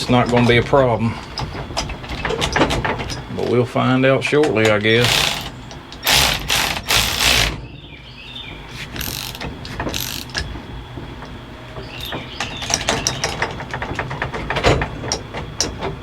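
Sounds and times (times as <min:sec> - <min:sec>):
metallic clicking and rattling: 0:04.4 - 0:07.6, 0:09.0 - 0:10.5, 0:11.9 - 0:15.9.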